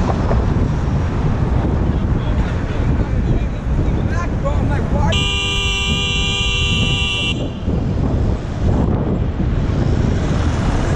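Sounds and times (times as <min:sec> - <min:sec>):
traffic noise: 0:00.0 - 0:10.9
bicycle car horn blast: 0:05.1 - 0:07.8.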